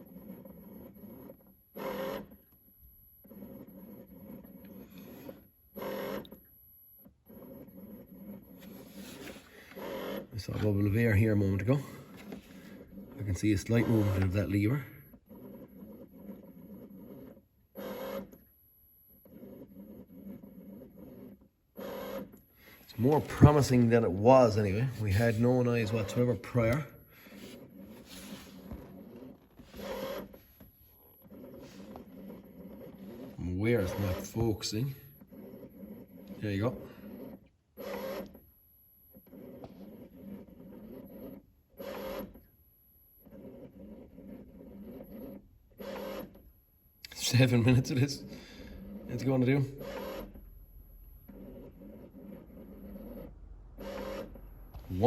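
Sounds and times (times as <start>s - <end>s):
electric pump running: 48.2s - 50.4s.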